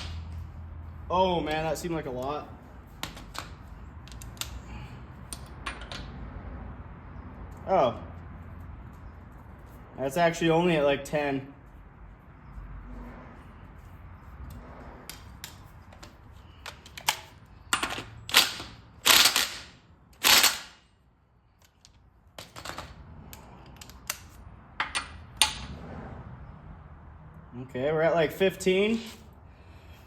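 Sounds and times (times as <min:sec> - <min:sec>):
sharp clicks of tools: 0:03.0 - 0:04.6, 0:14.5 - 0:20.8, 0:23.3 - 0:25.6.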